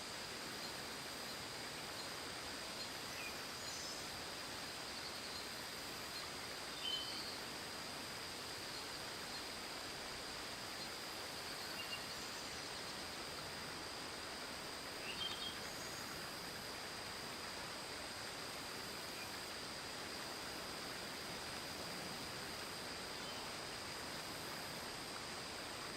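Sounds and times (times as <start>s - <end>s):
steady hiss: 0.0s - 25.9s.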